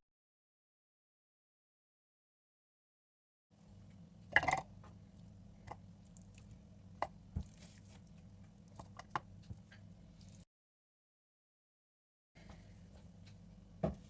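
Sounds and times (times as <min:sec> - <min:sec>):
low steady hum: 0:03.6 - 0:10.4, 0:12.4 - 0:14.0.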